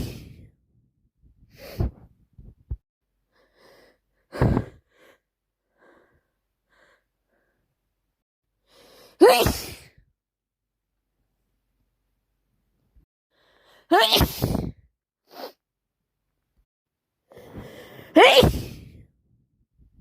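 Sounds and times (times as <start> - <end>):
woman sneezing: 9.2 - 9.9, 13.9 - 14.7, 18.1 - 18.9.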